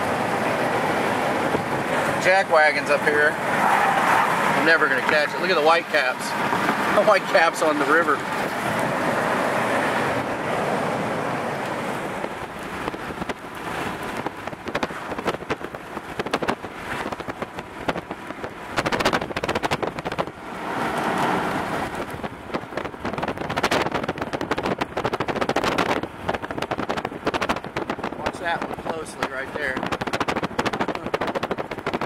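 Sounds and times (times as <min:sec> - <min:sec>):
rain rushing: 0:00.0 - 0:32.0
road noise: 0:00.0 - 0:32.0.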